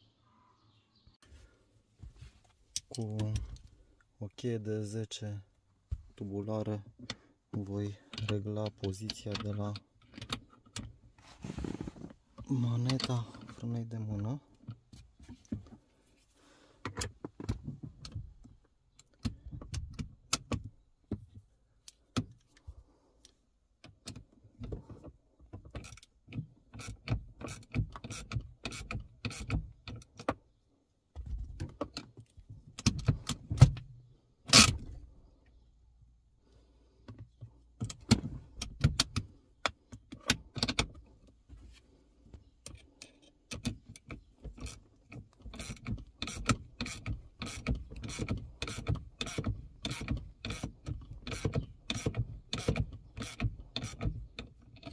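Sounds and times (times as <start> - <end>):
socket wrench clicking and rattling: 42.7 - 54.9.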